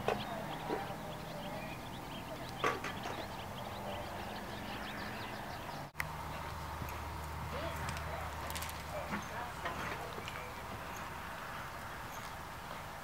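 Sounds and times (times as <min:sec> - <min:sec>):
horse hooves clopping: 0:06.0 - 0:12.8.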